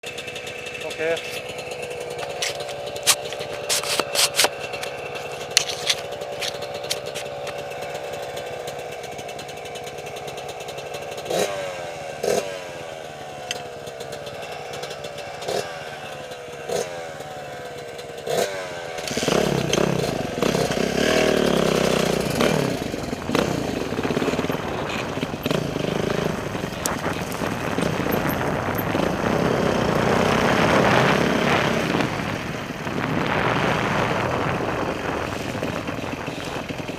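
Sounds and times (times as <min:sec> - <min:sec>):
sharp clicks and clatter: 0:00.0 - 0:11.5, 0:19.0 - 0:32.9, 0:33.8 - 0:36.9
motorcycle engine: 0:00.0 - 0:36.9.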